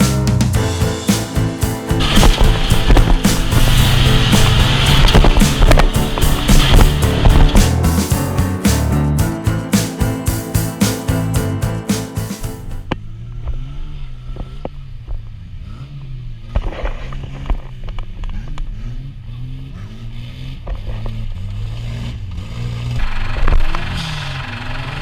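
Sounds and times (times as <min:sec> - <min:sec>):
knocks and scrapes: 0:01.1 - 0:09.2
vehicle engine revving: 0:02.0 - 0:09.0, 0:12.9 - 0:25.0.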